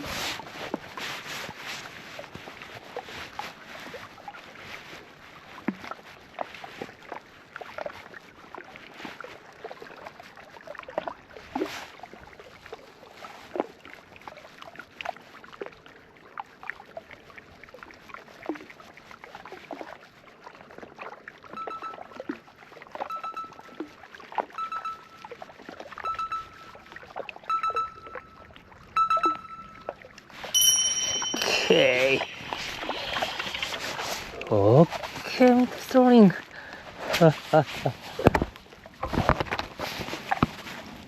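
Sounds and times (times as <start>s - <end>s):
short high tone: 30.6s - 34.0s.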